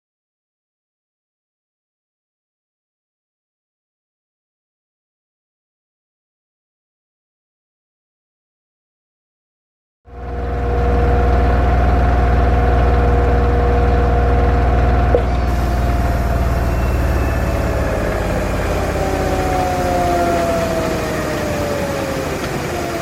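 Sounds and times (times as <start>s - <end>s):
washing machine motor hum: 10.1s - 23.0s
whining tones sliding in pitch: 10.1s - 23.0s.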